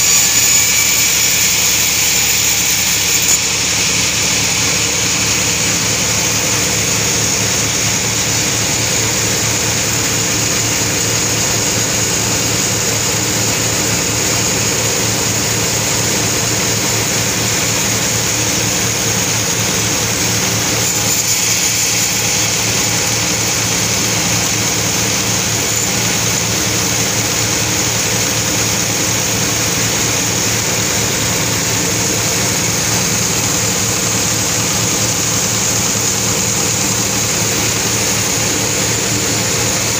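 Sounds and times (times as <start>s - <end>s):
high whine: 0.0s - 39.9s
sawmill machinery motor drone: 0.0s - 39.9s.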